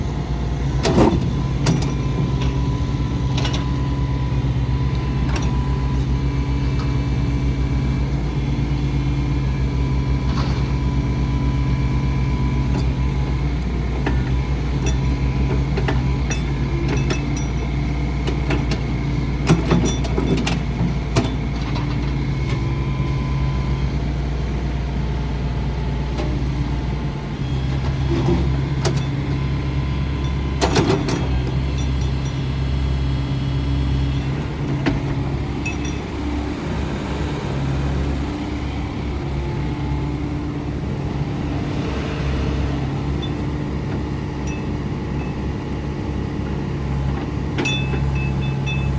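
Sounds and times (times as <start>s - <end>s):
excavator diesel engine running: 0.0s - 48.9s
clicks and metal clanks: 14.8s - 22.2s, 28.1s - 29.4s, 34.7s - 36.2s, 43.1s - 45.5s, 47.1s - 48.9s.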